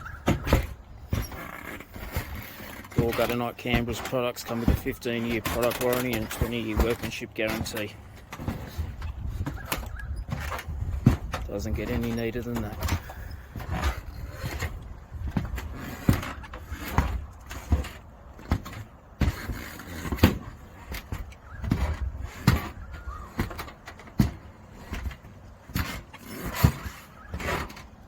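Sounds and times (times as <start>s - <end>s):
wind buffeting microphone: 0.0s - 2.4s, 3.5s - 19.3s
footsteps on steel roof sheeting: 0.0s - 28.0s.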